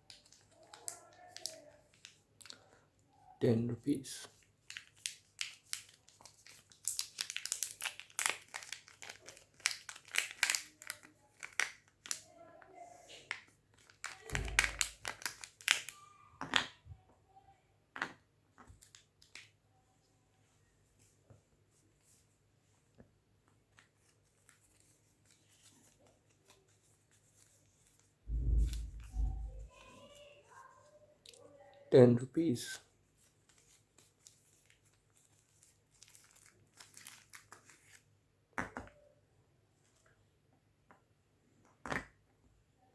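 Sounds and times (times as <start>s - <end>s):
wrapper crinkling and tearing: 4.6s - 12.3s, 13.3s - 16.0s, 35.9s - 38.0s
dull thud: 28.3s - 29.7s
faint rustling: 28.3s - 30.9s.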